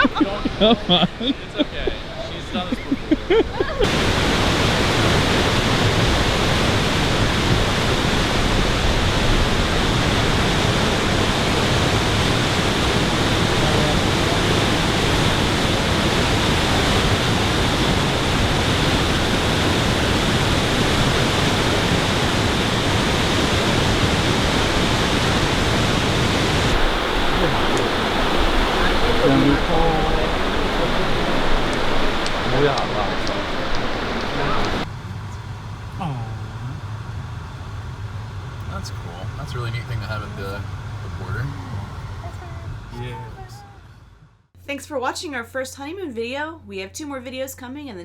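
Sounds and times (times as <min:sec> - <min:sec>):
falling water rushing: 0:00.0 - 0:34.9.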